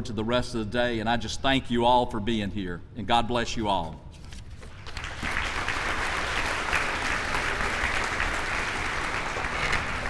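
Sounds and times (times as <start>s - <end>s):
audience applauding: 4.8s - 10.0s.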